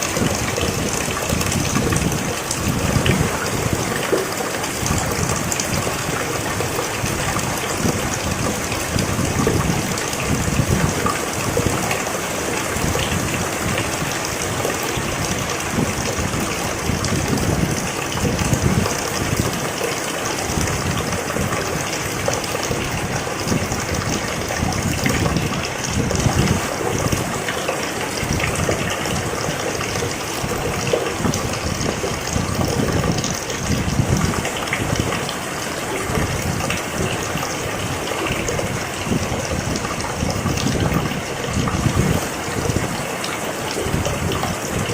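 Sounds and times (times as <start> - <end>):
steady rain falling: 0.0 - 44.9.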